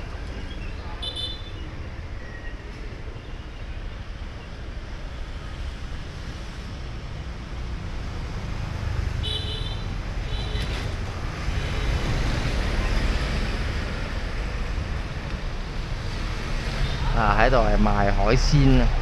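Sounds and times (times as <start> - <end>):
street traffic rumble: 0.0 - 19.0.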